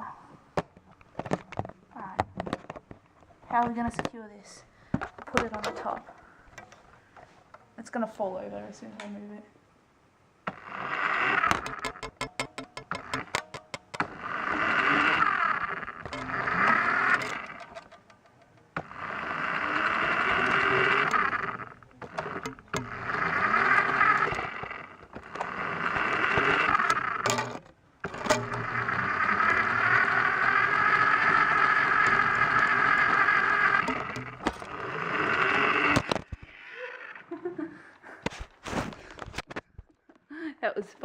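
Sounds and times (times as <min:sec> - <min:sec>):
toy car electric motor whirring: 0:10.5 - 0:37.2.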